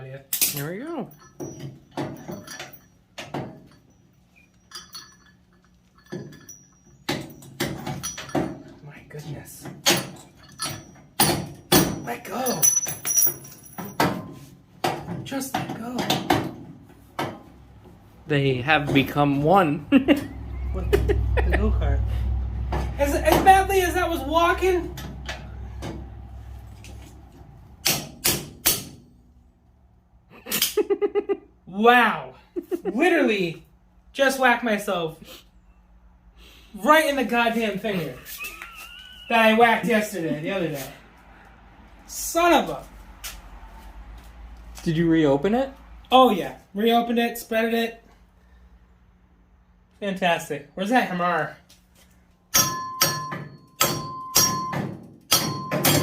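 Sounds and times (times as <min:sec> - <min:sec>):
metal tools clinking: 0:00.3 - 0:08.9, 0:09.8 - 0:14.5
hammer striking metal: 0:27.8 - 0:29.2, 0:52.5 - 0:56.0.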